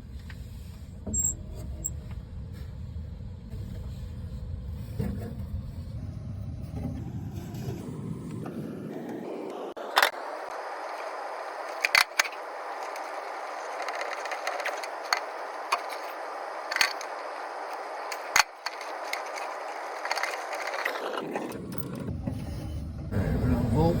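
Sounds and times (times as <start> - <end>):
steady airy hiss: 9.3 - 20.9.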